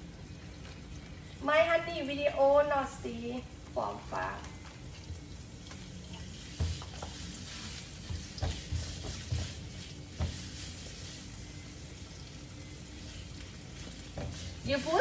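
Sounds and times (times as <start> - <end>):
meat sizzling in a pan: 5.2 - 15.0
utensil knocking against pan: 8.0 - 9.6.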